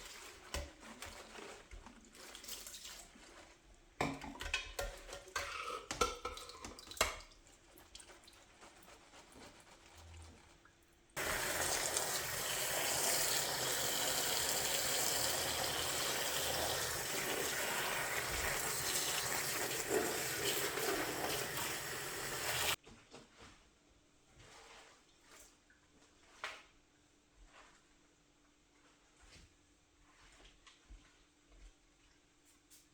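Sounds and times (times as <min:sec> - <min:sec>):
tap running into sink: 0:11.2 - 0:22.8.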